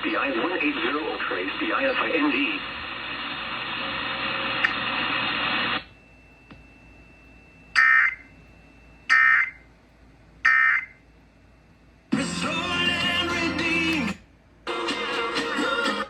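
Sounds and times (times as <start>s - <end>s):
steady radio hiss: 0.0s - 6.2s, 12.0s - 16.0s
harsh alert data tone bursts: 7.7s - 8.3s, 9.1s - 9.6s, 10.4s - 11.0s.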